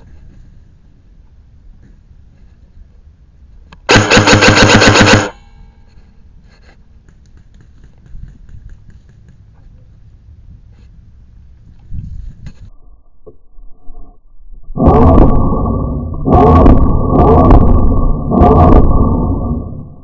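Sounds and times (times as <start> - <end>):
airsoft gun full-auto burst: 3.9 - 5.4.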